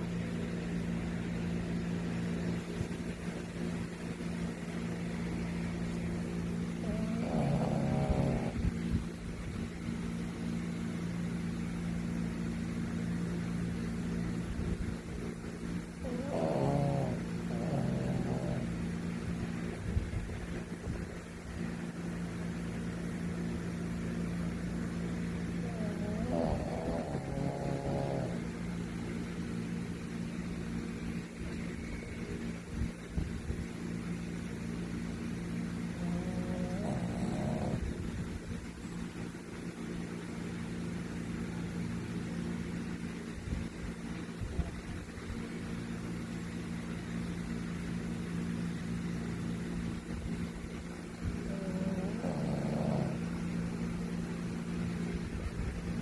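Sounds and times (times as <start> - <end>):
low steady hum: 0.0 - 56.0
dog snorting: 6.6 - 8.8, 16.0 - 18.8, 25.6 - 28.6, 35.8 - 37.9, 51.3 - 53.4
dog snoring: 6.6 - 8.9, 15.8 - 19.0, 25.6 - 28.6, 35.8 - 38.0, 51.2 - 53.6.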